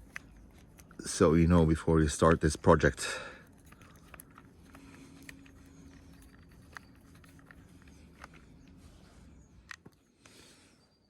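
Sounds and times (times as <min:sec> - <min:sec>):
small screws and screwdriver clicking: 0:00.0 - 0:01.0, 0:03.4 - 0:08.8
low steady hum: 0:00.0 - 0:11.0.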